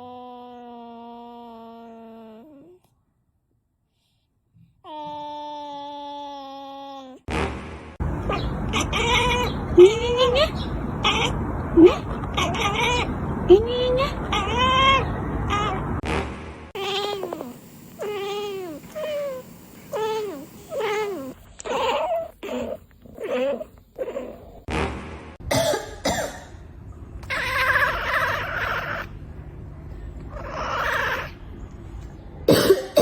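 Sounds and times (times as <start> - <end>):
cat raspy noises: 8.1 - 16.0, 16.8 - 24.7, 27.2 - 29.1, 30.3 - 31.4
cats meowing: 8.2 - 16.0, 16.8 - 24.7, 27.2 - 29.1, 30.3 - 31.4
cat cough-like bursts: 25.5 - 26.6.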